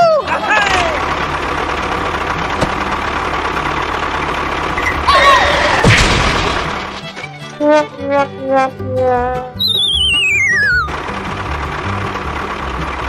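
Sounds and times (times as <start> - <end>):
sharp thud: 5.8 - 7.0.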